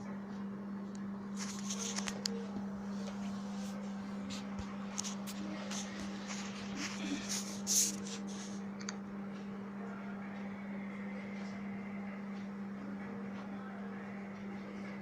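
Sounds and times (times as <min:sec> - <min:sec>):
steady low hum: 0:00.0 - 0:15.0
rustling and scraping: 0:01.3 - 0:08.7.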